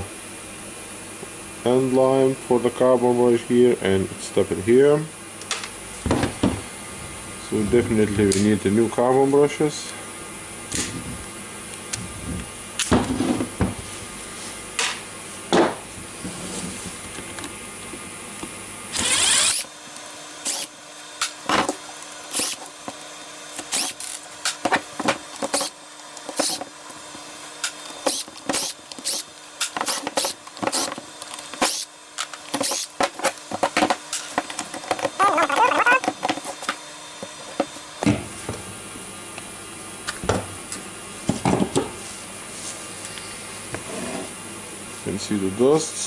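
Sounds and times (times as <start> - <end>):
plastic and metal parts clicking: 19.5 - 38.0.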